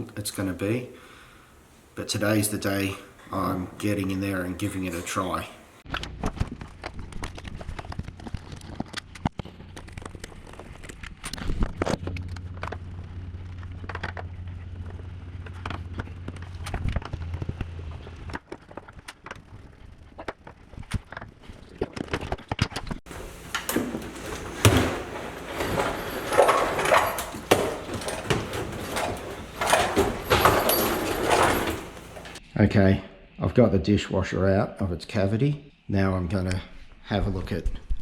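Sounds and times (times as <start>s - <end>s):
dishwasher knocking and scraping: 23.1s - 32.4s.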